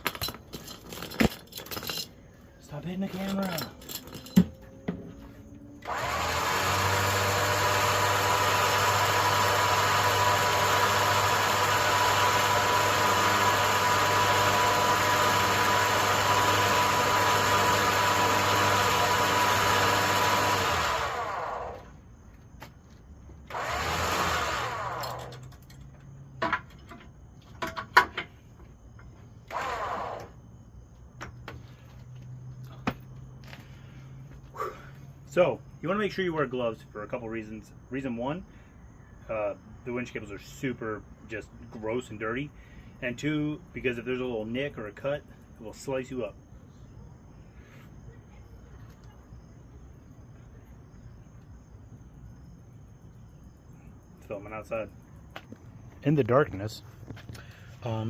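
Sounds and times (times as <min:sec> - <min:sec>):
electric winch motor whining: 0:04.2 - 0:22.0, 0:23.5 - 0:25.6, 0:29.5 - 0:30.4.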